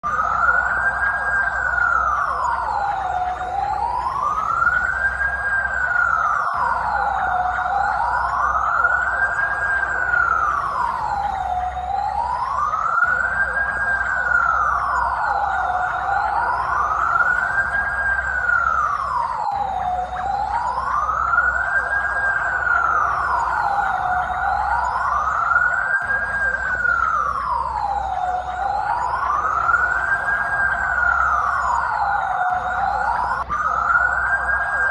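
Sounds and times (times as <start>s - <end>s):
police siren wailing: 0.0s - 34.9s.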